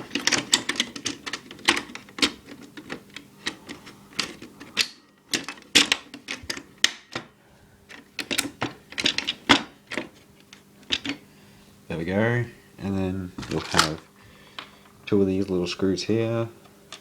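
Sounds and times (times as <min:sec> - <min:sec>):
hard plastic parts clicking: 0:00.0 - 0:11.2, 0:13.4 - 0:14.0.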